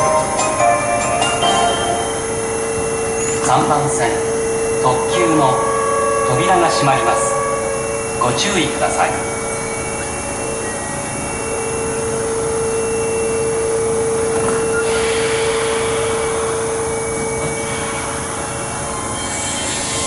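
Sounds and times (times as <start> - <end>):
electrical hum: 0.0 - 20.0
machine whirring: 0.0 - 20.0
hiss: 14.6 - 20.0.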